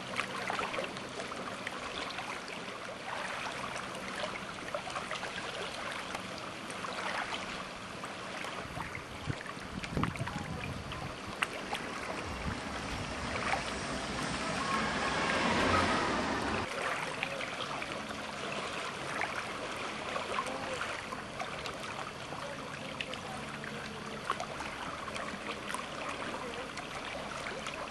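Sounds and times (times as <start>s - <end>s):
water rushing and splashing: 0.0s - 27.9s
wind buffeting microphone: 8.7s - 16.7s.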